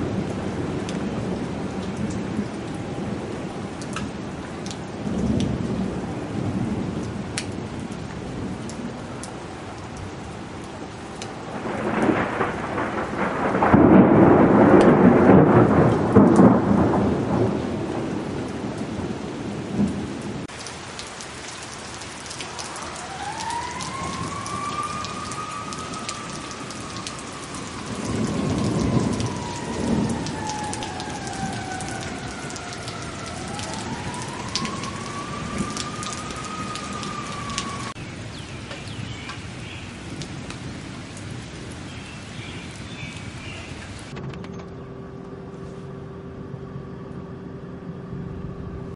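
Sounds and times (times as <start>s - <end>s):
thunder rumbling: 0.0s - 10.1s, 10.8s - 20.5s, 22.4s - 41.8s, 43.8s - 48.9s
heavy rain: 0.0s - 44.8s.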